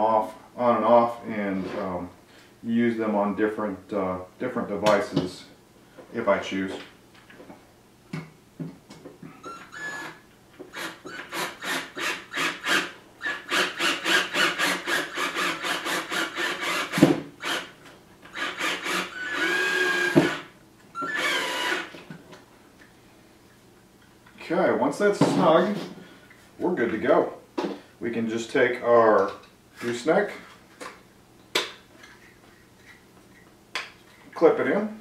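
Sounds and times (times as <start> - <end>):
drill driving a screw into metal: 9.7 - 17.7, 18.3 - 21.9.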